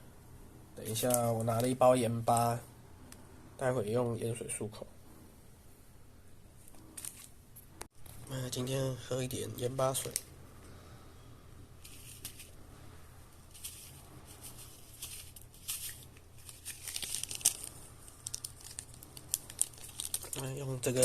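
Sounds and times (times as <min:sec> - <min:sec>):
plastic crackles: 0:09.9 - 0:10.3, 0:13.5 - 0:21.0
plastic packet crinkling: 0:13.5 - 0:21.0.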